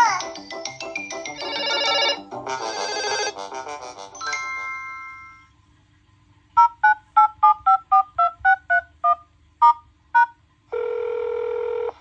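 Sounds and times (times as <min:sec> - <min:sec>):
melodic phone chime: 0:00.8 - 0:03.3, 0:04.2 - 0:05.5
fast two-note beeps: 0:06.6 - 0:10.3.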